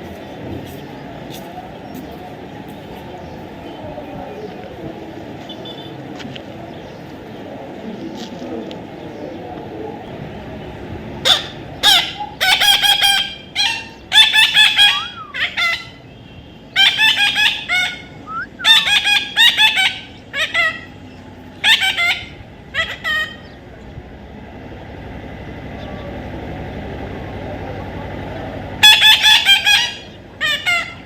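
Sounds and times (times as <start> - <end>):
parrot harsh calls: 11.2 - 16.0, 16.7 - 23.6, 28.8 - 31.0.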